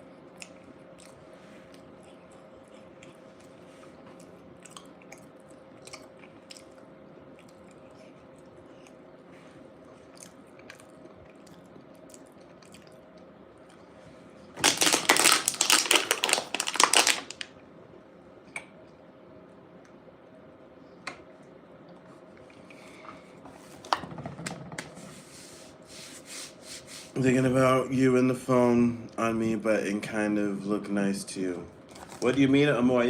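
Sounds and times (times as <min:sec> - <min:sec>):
chewing and mouth clicks: 0:00.3 - 0:09.0, 0:10.0 - 0:13.8.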